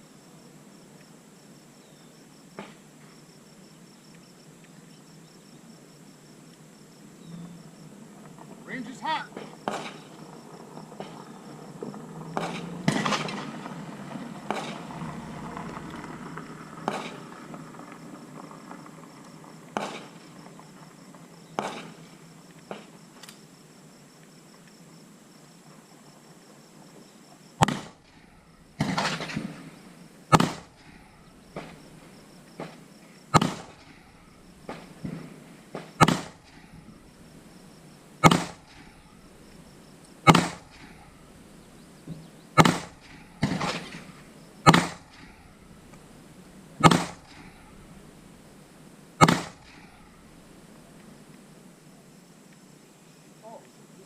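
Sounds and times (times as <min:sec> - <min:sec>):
gunshots: 0:12.4 - 0:13.5, 0:27.6 - 0:28.1, 0:28.8 - 0:31.8, 0:33.3 - 0:34.0, 0:34.6 - 0:36.6, 0:38.2 - 0:38.9, 0:40.2 - 0:41.0, 0:42.6 - 0:45.3, 0:46.8 - 0:47.6, 0:49.2 - 0:49.9.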